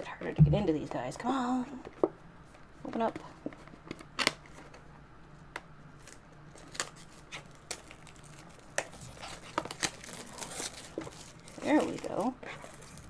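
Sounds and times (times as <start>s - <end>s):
plastic shrink wrap crinkling: 6.0s - 13.0s.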